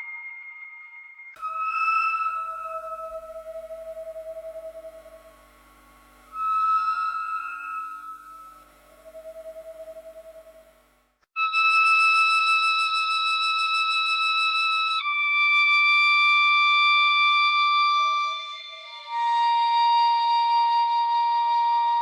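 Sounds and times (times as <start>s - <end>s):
faint wavering tone: 0.0s - 10.9s
flute-like electronic tone: 0.0s - 15.0s, 16.8s - 22.0s.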